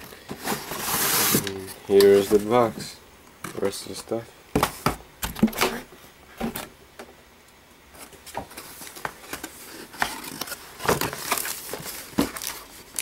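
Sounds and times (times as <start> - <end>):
rustling and scraping packaging: 0.0 - 4.0, 7.9 - 13.0.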